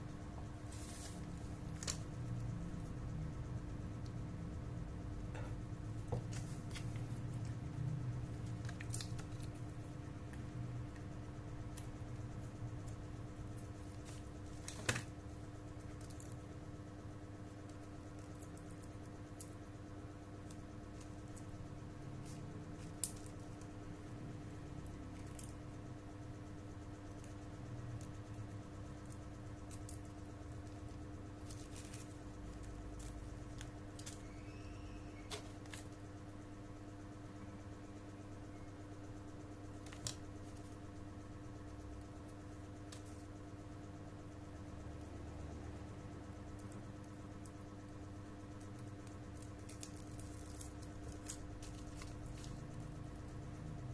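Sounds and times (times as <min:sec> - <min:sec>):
steady low hum: 0:00.0 - 0:53.9.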